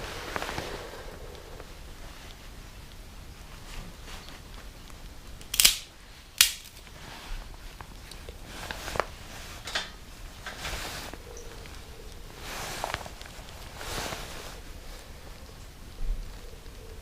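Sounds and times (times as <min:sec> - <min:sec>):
small wood fire crackling: 0:00.0 - 0:17.0
sharp pops and snaps: 0:00.4 - 0:12.3.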